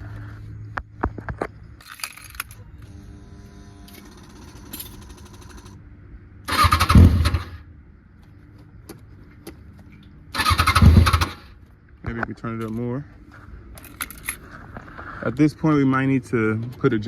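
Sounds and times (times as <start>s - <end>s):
faint steady whir: 0.0s - 10.3s
motorcycle engine cranking: 6.5s - 7.6s, 10.4s - 11.5s.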